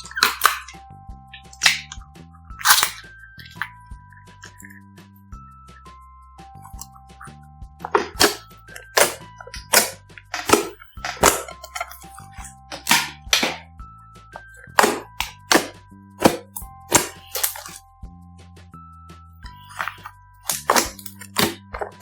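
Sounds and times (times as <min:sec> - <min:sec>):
slime popping and crackling: 0:00.0 - 0:00.7, 0:01.5 - 0:02.0, 0:02.6 - 0:03.0, 0:07.9 - 0:13.6, 0:14.7 - 0:17.8, 0:19.6 - 0:22.0
light pop music: 0:00.0 - 0:22.0.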